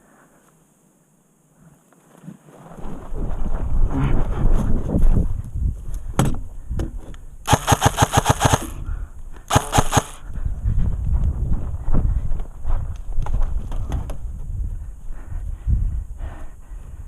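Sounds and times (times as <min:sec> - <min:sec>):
airsoft gun firing bursts: 0:07.5 - 0:08.9, 0:09.5 - 0:10.2.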